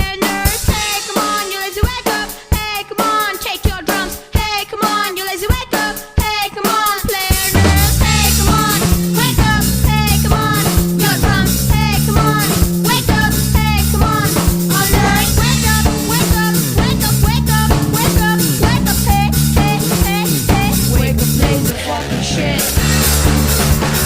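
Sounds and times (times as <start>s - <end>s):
music with drums bass and guitar: 0.0s - 24.0s.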